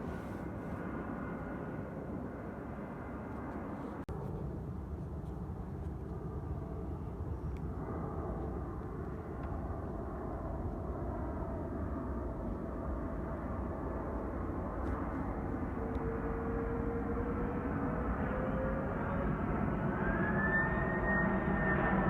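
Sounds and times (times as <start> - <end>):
airplane engines rumbling: 0.0 - 22.0
whining tone rising in pitch: 15.8 - 22.0.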